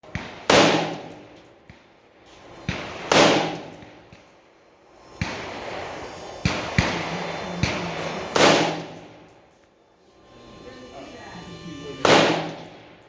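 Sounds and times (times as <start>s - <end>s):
rifle shots echoing: 0.0s - 1.9s, 2.7s - 4.2s, 5.2s - 9.3s, 12.1s - 13.0s.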